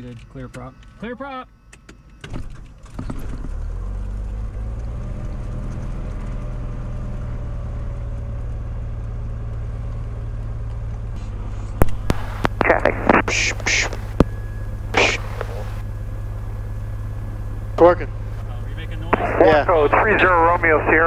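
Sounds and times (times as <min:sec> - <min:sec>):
piston aircraft engine idling: 0:10.0 - 0:21.0.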